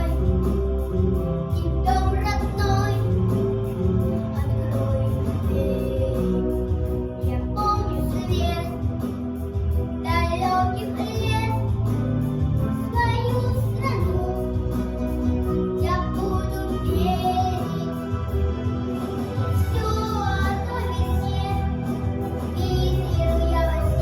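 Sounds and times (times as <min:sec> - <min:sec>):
recorded backing track: 0:00.0 - 0:24.0
children singing together: 0:19.7 - 0:24.0.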